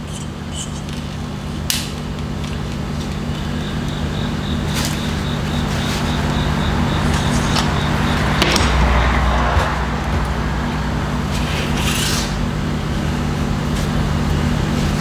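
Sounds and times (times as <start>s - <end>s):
low motor hum: 6.0s - 15.0s.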